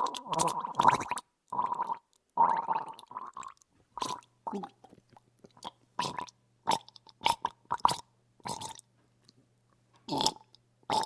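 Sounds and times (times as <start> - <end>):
person gargling water: 0.0 - 8.8.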